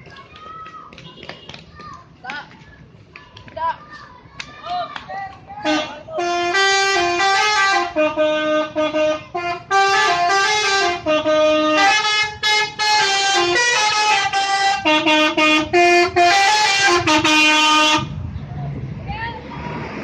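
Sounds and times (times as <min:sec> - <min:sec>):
musical air horn tune: 0:05.7 - 0:18.1.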